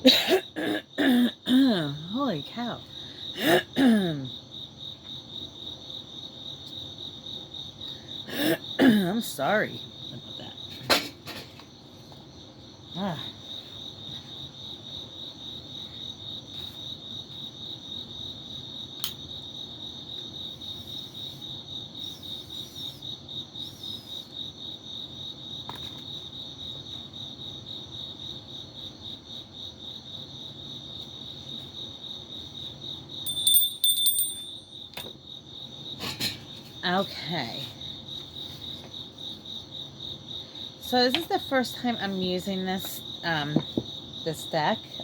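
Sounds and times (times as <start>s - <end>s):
crickets chirring: 0.0s - 45.0s
high ringing: 33.3s - 35.1s.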